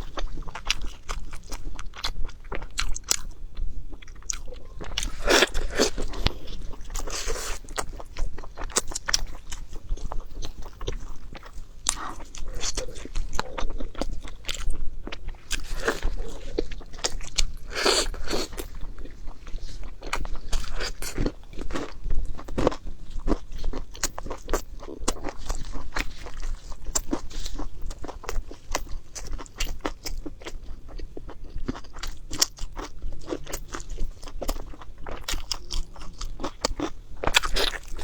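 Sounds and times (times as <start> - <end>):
person chewing food: 0.0 - 38.0.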